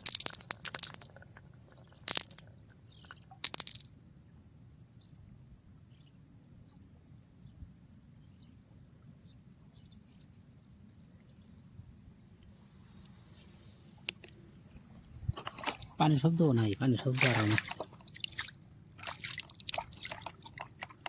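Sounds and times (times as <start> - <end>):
marbles clacking on track: 0.0 - 1.2, 2.0 - 2.5, 3.4 - 3.9.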